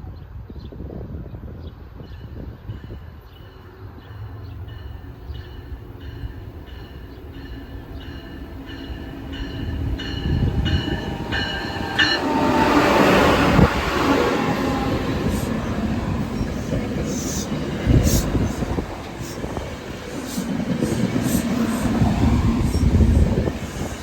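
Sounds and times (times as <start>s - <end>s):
train rumble and wheel noise: 0.0s - 24.0s
train bell ringing: 2.0s - 24.0s.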